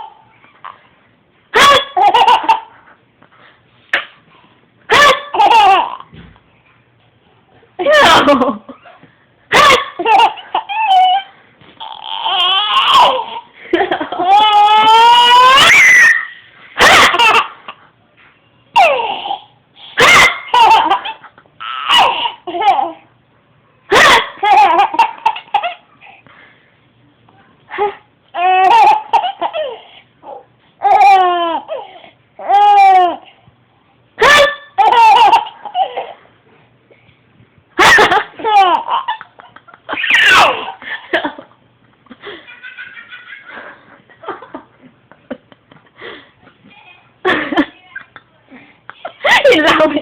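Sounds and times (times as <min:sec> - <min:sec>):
baby laughing: 0:01.6 - 0:02.8, 0:04.9 - 0:06.1, 0:07.8 - 0:15.9, 0:16.8 - 0:17.7, 0:18.8 - 0:23.0, 0:23.9 - 0:26.0, 0:27.8 - 0:33.3, 0:34.2 - 0:36.2, 0:37.8 - 0:41.4, 0:42.2 - 0:43.8.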